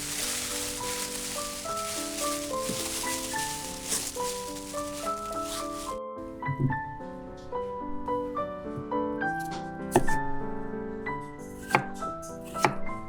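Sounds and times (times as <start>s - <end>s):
background piano music: 0.0s - 13.0s.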